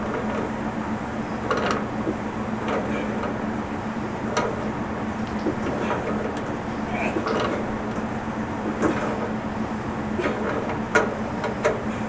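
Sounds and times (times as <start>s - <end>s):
steady low hum: 0.0s - 11.5s
metallic clicks of pipe fittings: 4.3s - 9.3s.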